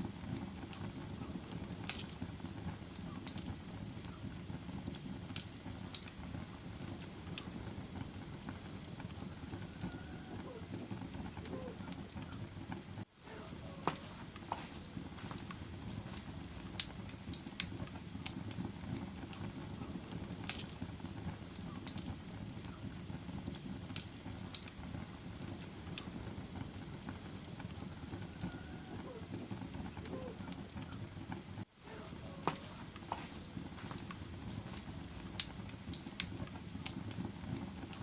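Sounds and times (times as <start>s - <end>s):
fire crackling: 0.0s - 38.0s
fire popping and snapping: 0.0s - 38.0s.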